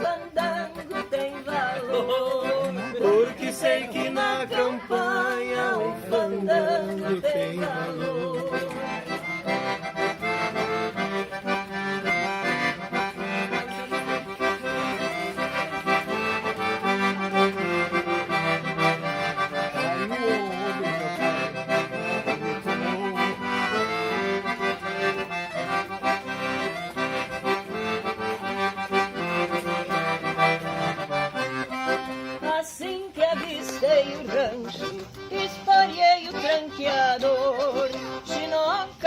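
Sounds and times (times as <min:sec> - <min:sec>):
accordion playing: 0:00.0 - 0:39.0.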